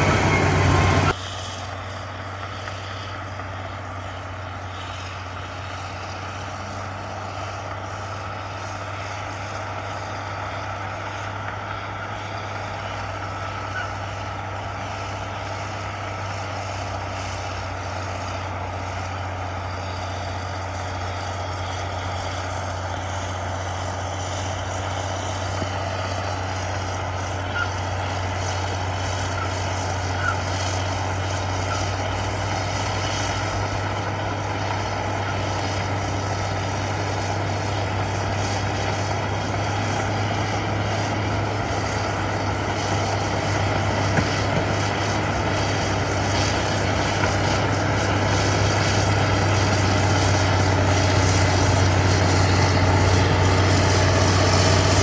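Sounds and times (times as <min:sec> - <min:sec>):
heavy diesel machinery humming: 0:00.0 - 0:55.0.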